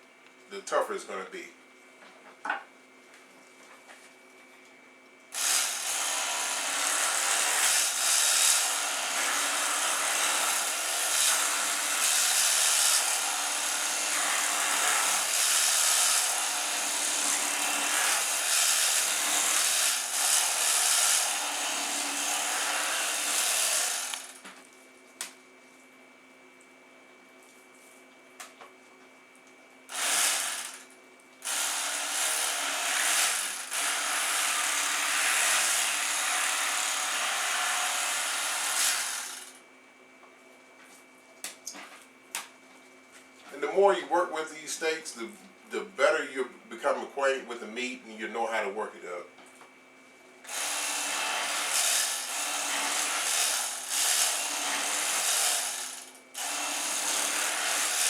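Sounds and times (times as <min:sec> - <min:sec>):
electric knife buzzing: 0:05.3 - 0:24.6, 0:29.9 - 0:39.6, 0:50.4 - 0:58.0.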